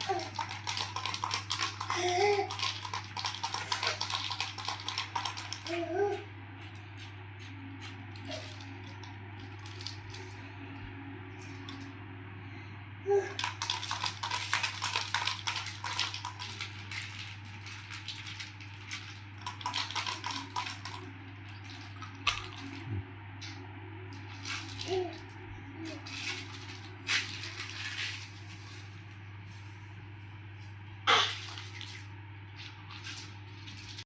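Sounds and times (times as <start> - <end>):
steady low hum: 0.0 - 34.0
small hard objects clattering: 0.2 - 5.6, 13.4 - 21.1.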